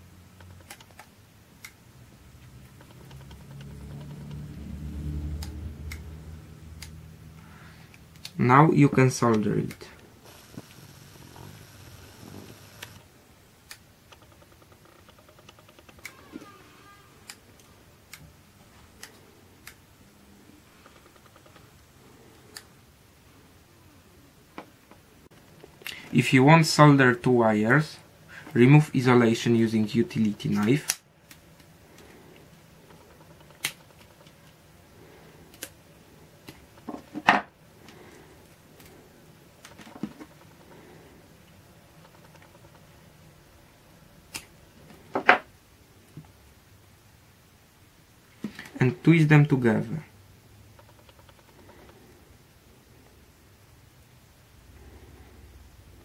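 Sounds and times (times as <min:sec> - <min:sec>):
sharp clicks and light knocks: 0:02.4 - 0:04.5.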